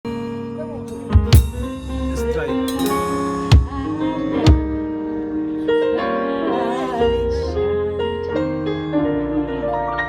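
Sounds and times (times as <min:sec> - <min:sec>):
sustained keyboard chords: 0:00.1 - 0:10.0
bass line: 0:00.9 - 0:05.2.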